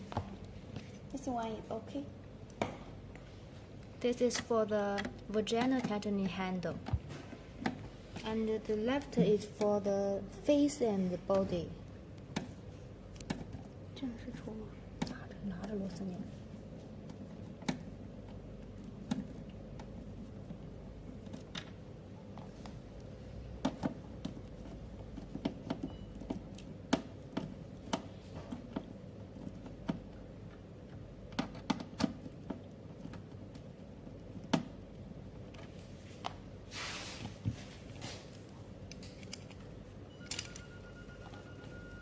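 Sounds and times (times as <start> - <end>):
steady low hum: 0.0 - 42.0
clicks and knocks of parts: 38.8 - 40.6.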